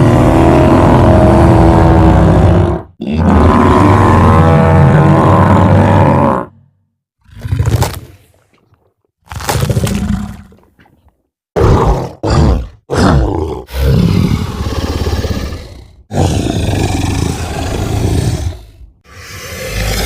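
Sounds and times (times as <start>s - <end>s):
creature roars and growls: 0.0s - 6.6s, 11.6s - 20.0s.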